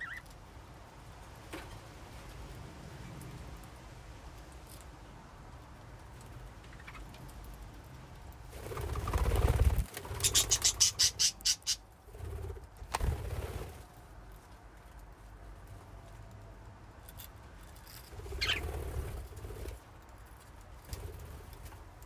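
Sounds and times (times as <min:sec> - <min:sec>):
bird wings flapping: 0:08.5 - 0:11.4, 0:12.1 - 0:13.9, 0:18.1 - 0:19.9.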